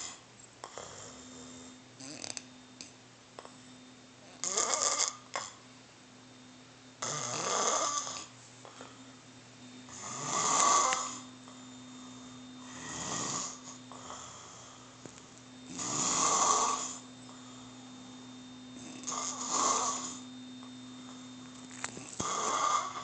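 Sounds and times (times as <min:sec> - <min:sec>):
person snoring: 0:00.0 - 0:02.4, 0:04.2 - 0:05.6, 0:07.0 - 0:09.0, 0:09.9 - 0:11.3, 0:12.0 - 0:15.0, 0:15.7 - 0:17.9, 0:18.8 - 0:20.3, 0:21.8 - 0:23.0.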